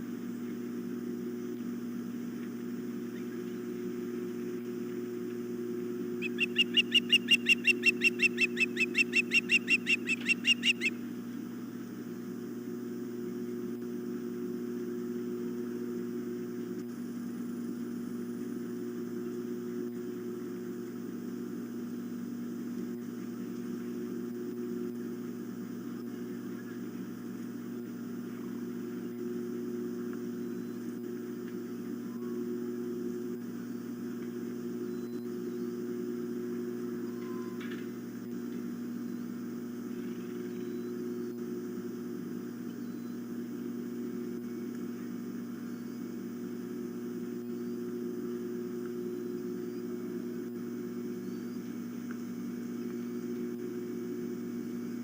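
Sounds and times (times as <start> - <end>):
steady low hum: 0.0 - 55.0
osprey high chirps: 6.2 - 11.0.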